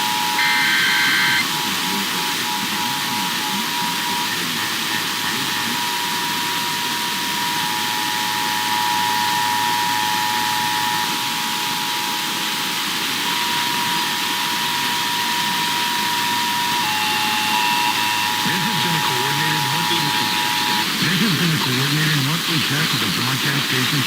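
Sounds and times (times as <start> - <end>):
thin steady whistle tones: 0.0 - 11.1, 13.3 - 20.9
radio static hiss: 0.0 - 24.0.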